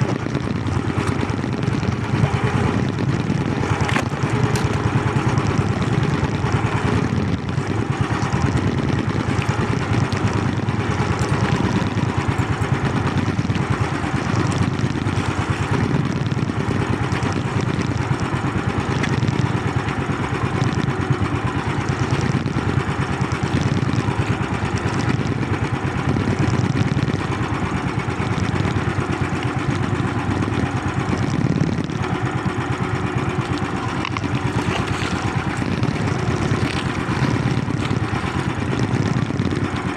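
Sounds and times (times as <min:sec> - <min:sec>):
small boat engine chugging: 0:00.0 - 0:39.9.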